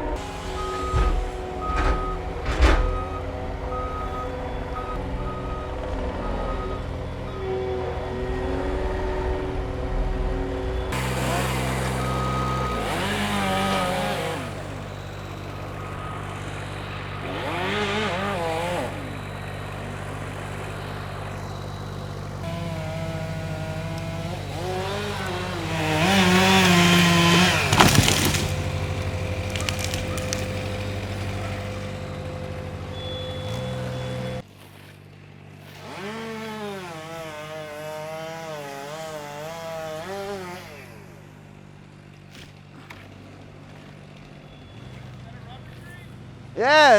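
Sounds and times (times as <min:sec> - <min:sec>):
engine idling: 0:00.0 - 0:26.3, 0:27.5 - 0:35.6
chainsaw revving: 0:04.8 - 0:34.5, 0:35.5 - 0:41.5.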